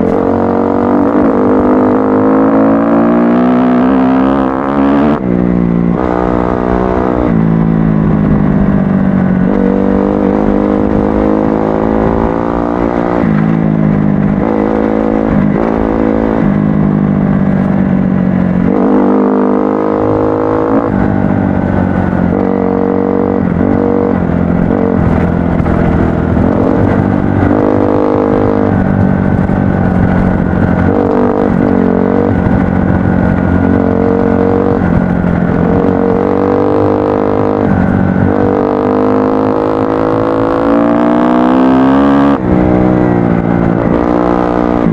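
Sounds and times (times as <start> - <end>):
dirt bike engine revving: 0.0 - 5.2, 9.4 - 16.7, 29.9 - 44.9.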